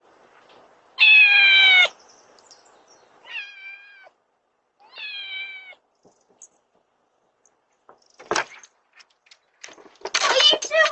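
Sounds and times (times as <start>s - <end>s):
cat meowing: 1.0s - 2.0s, 3.2s - 4.2s, 4.8s - 5.8s.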